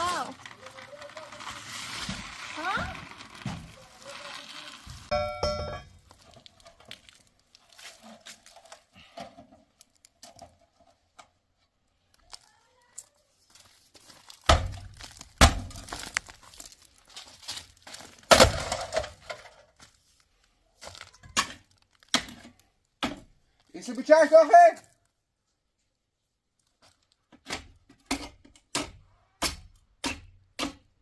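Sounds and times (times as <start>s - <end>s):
objects knocking and clattering: 0.0s - 7.2s, 17.5s - 19.8s.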